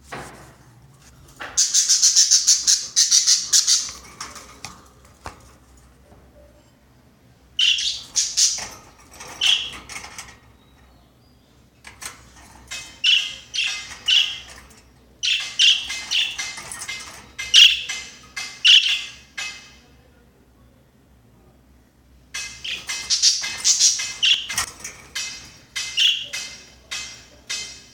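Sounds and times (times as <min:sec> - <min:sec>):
budgerigar chirping: 0:01.6 - 0:04.0, 0:07.6 - 0:08.6, 0:13.0 - 0:14.5, 0:17.5 - 0:19.2, 0:25.8 - 0:26.4.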